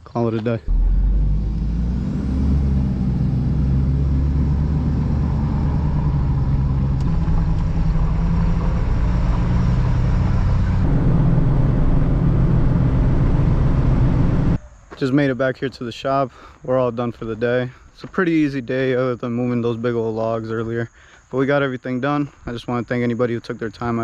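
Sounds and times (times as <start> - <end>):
vehicle engine running: 0.7 - 14.6.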